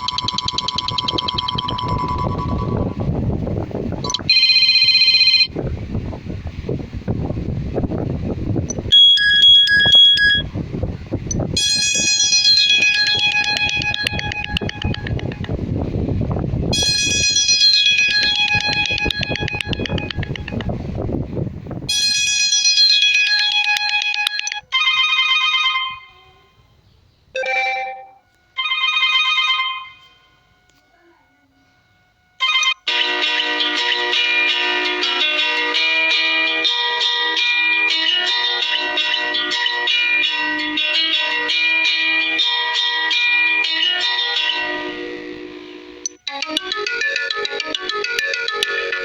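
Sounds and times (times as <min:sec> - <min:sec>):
chiming ringtone tune: 0:00.0 - 0:03.1, 0:04.0 - 0:05.5, 0:08.7 - 0:10.5, 0:11.6 - 0:15.5, 0:16.7 - 0:20.6, 0:21.9 - 0:26.4, 0:27.4 - 0:30.7, 0:32.4 - 0:34.1, 0:34.9 - 0:49.0
bright ringtone melody: 0:00.0 - 0:03.2, 0:04.0 - 0:05.5, 0:08.7 - 0:10.5, 0:11.4 - 0:15.6, 0:16.7 - 0:20.7, 0:21.9 - 0:26.5, 0:27.4 - 0:30.8, 0:32.4 - 0:49.0.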